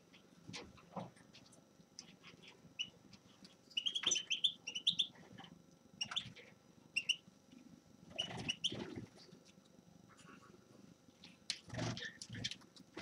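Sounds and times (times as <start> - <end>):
finch chirping: 2.4 - 3.0, 3.7 - 5.2, 6.0 - 6.4, 7.0 - 7.2, 8.1 - 8.9.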